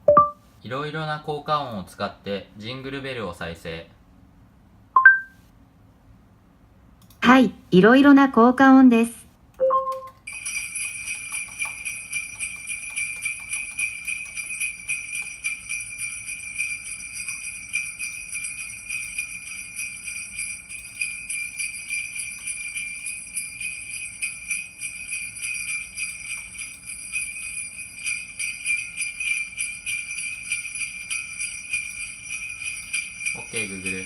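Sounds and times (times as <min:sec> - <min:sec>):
sleigh bells jingling: 0:10.2 - 0:34.0.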